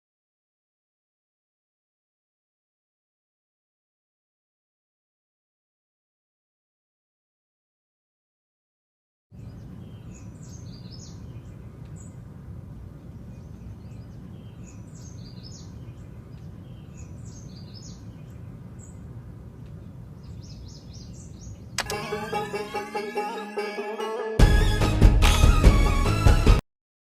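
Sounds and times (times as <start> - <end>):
birds chirping: 9.3 - 23.4
low outdoor rumble: 9.4 - 21.8.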